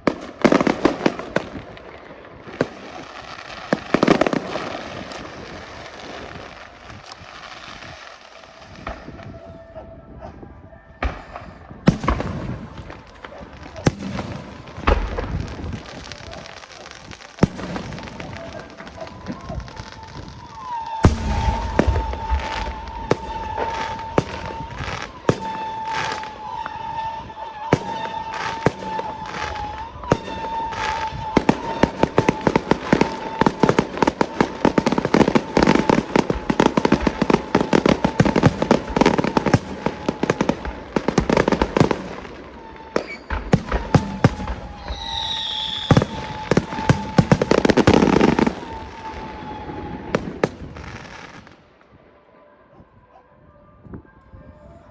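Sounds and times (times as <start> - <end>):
firecrackers banging: 11.0 - 51.5.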